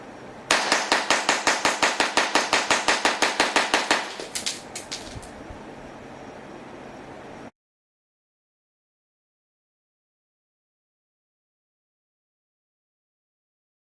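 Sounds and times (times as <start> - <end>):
toy gun firing sharp shots: 0.5 - 5.3.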